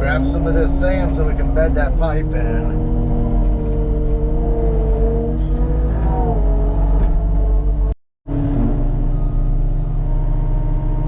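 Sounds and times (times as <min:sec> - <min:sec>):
diesel engine running under load: 0:06.5 - 0:11.0.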